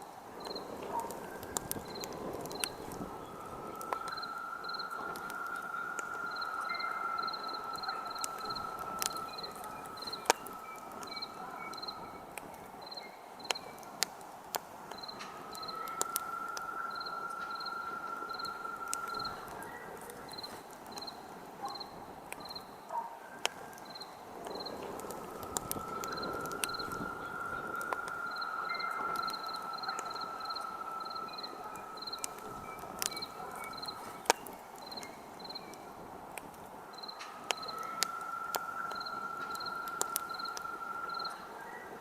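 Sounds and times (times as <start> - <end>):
burning wood popping: 0.0 - 42.0
campfire crackling: 0.0 - 42.0
crickets chirping: 0.0 - 42.0.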